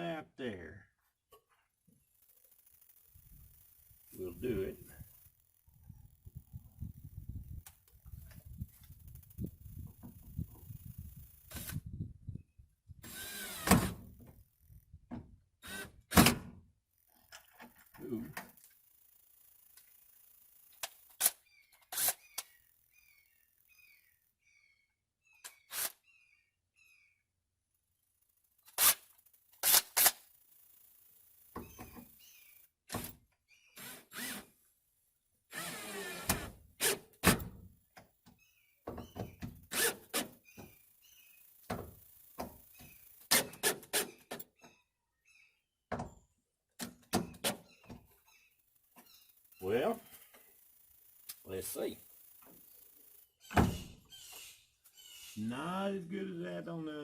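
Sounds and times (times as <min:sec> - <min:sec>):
knocks and thunks of hand work: 0:37.2 - 0:39.6, 0:45.9 - 0:46.2.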